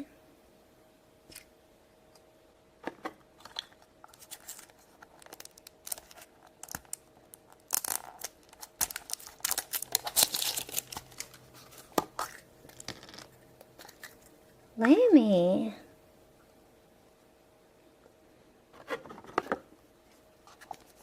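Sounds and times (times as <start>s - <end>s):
plastic packaging crinkling and tearing: 3.4s - 12.9s.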